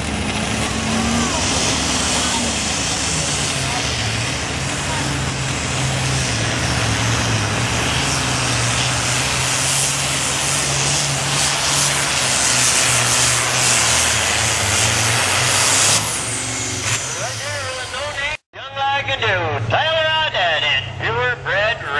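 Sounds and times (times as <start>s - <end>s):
tractor diesel engine under load: 0.0s - 21.9s.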